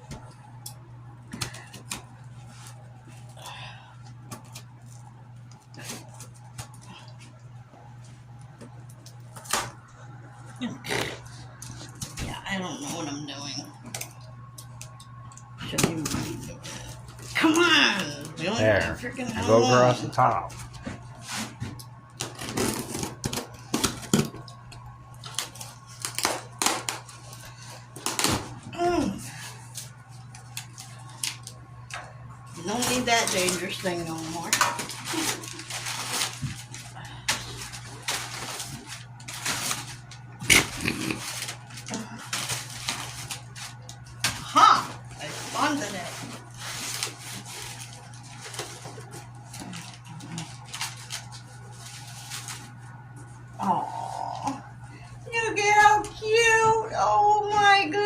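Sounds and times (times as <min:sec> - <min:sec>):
steady low hum: 0:00.0 - 0:58.0
packaging rustling: 0:32.7 - 0:52.9.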